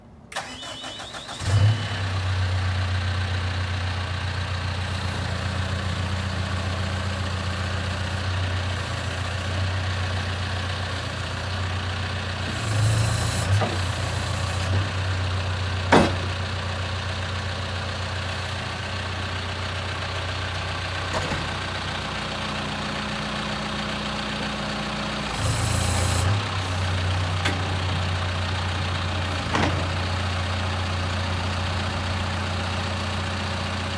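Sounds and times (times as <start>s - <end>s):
diesel engine idling: 0.4s - 33.9s
engine hiss: 12.4s - 14.8s, 25.0s - 29.5s.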